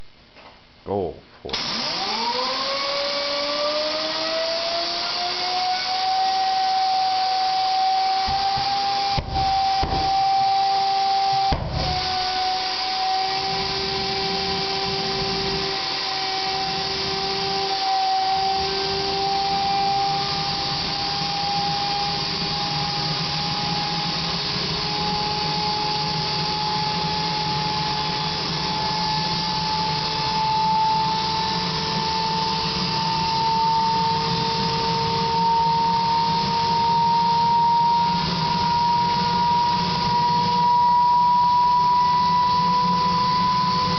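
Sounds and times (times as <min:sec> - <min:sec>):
jet engine whine: 0:01.5 - 0:43.9
loud rushing exhaust: 0:08.1 - 0:17.2.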